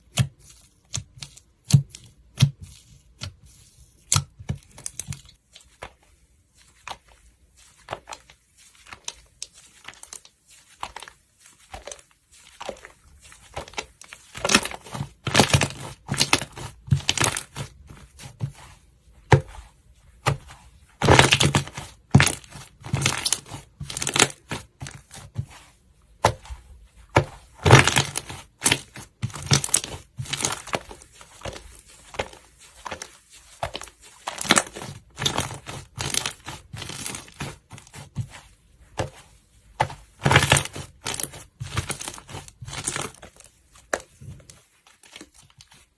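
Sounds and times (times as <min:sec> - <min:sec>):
slime crackling and popping: 0:21.0 - 0:25.1.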